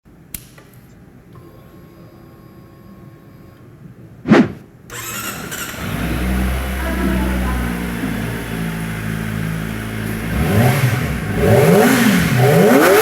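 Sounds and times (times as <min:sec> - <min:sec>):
faint hum: 0:00.7 - 0:05.0
short whoosh: 0:04.2 - 0:04.7.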